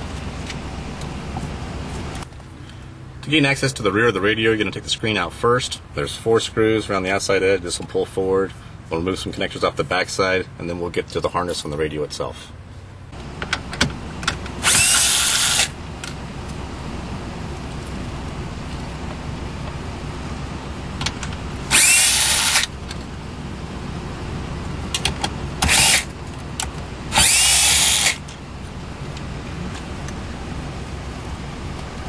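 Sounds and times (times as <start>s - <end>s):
cordless power driver spinning: 14.4s - 16.2s, 21.0s - 23.2s, 25.0s - 28.4s.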